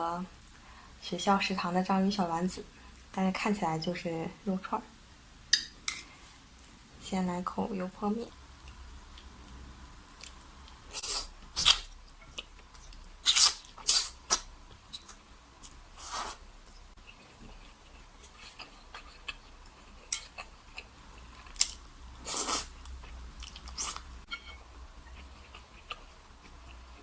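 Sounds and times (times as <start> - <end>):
chewing and mouth clicks: 25.1 - 27.0.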